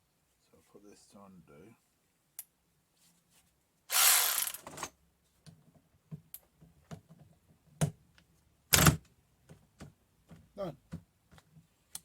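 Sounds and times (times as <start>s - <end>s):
electric ratchet running: 3.9s - 4.6s.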